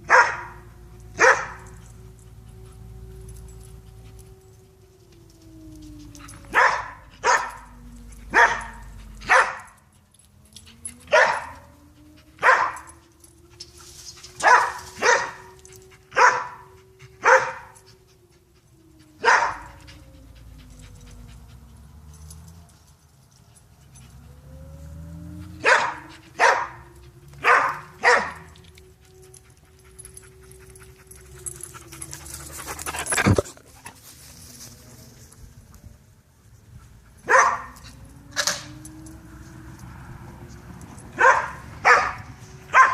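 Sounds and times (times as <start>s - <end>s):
dog barking: 0.1s - 0.6s, 1.2s - 1.6s, 6.5s - 7.7s, 8.3s - 9.7s, 11.1s - 11.6s, 12.4s - 12.9s, 14.4s - 15.5s, 16.2s - 16.6s, 17.2s - 17.7s, 19.2s - 19.8s, 25.6s - 28.5s, 37.2s - 37.8s, 41.2s - 42.9s
faint rising and falling tone: 0.6s - 36.7s.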